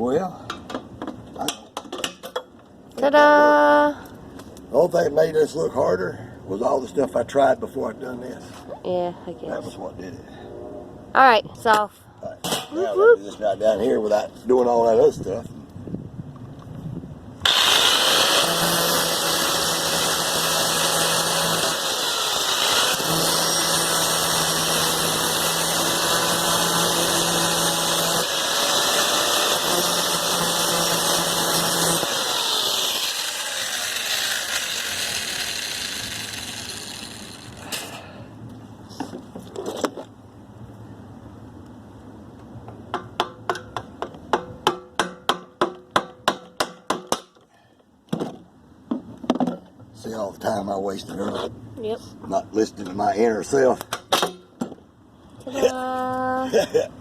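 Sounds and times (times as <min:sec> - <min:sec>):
power tool running: 0:17.4 - 0:37.8.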